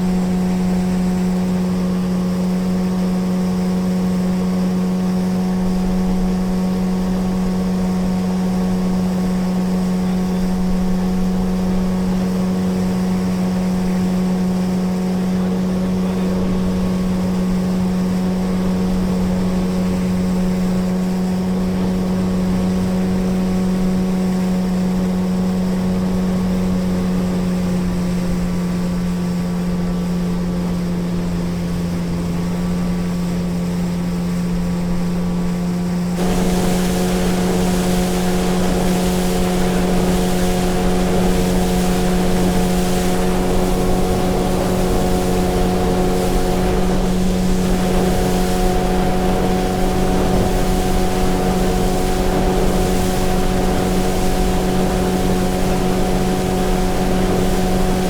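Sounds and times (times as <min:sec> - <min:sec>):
motorboat engine humming: 0:00.0 - 0:58.0
wind: 0:00.0 - 0:58.0
water rushing: 0:30.5 - 0:58.0.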